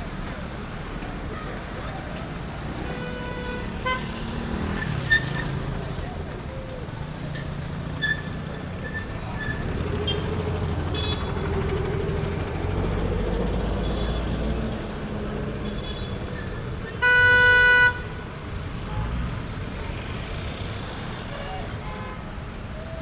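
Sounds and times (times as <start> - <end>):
rumble of passing cars: 0.0 - 23.0
car horn honk: 17.0 - 18.2.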